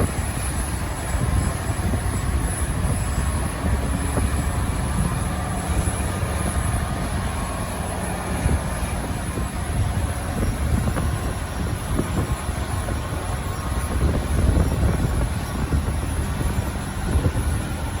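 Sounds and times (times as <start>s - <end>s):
jet engines rumbling with whine: 0.0s - 18.0s.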